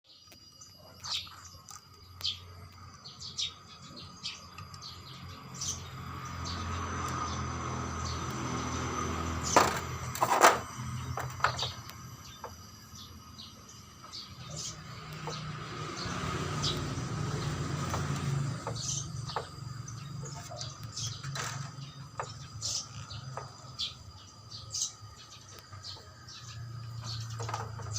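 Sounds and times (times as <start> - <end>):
birds chirping: 0.0 - 27.9
loud sharp knocks: 9.5 - 11.7.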